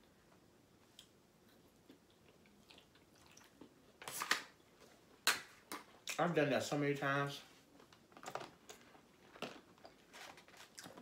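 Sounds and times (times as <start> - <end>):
person chewing: 0.8 - 4.0, 8.1 - 11.0.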